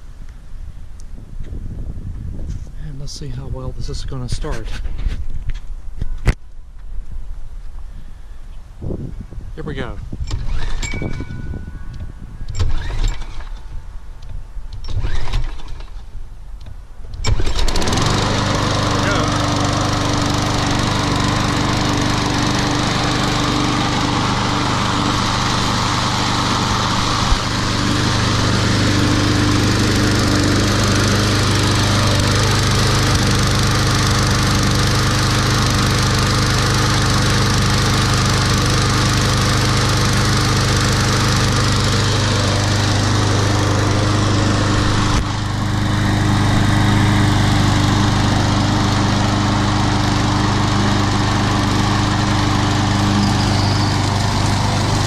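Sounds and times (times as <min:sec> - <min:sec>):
lawn mower engine running: 0:17.2 - 0:55.0.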